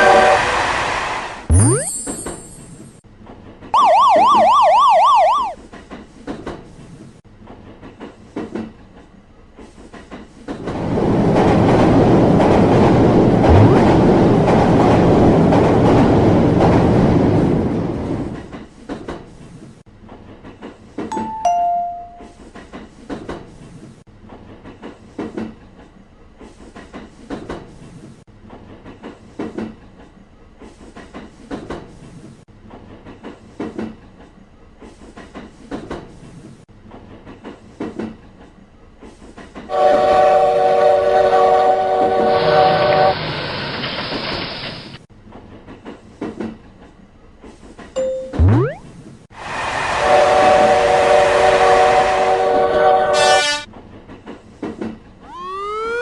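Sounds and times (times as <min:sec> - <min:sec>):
train rushing past: 0:00.0 - 0:01.5, 0:10.7 - 0:18.4, 0:49.3 - 0:53.4
warbling siren-like tone: 0:01.5 - 0:02.3, 0:03.8 - 0:05.6, 0:48.4 - 0:48.9, 0:55.2 - 0:56.0
two-note falling chime: 0:21.1 - 0:22.3, 0:48.0 - 0:48.8.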